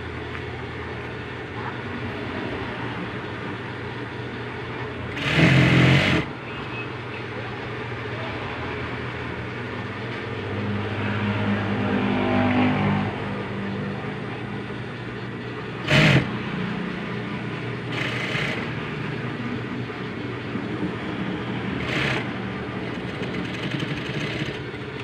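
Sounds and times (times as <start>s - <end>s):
sewing machine motor humming: 5.1s - 6.4s, 15.7s - 16.6s, 17.7s - 19.2s, 21.8s - 25.0s.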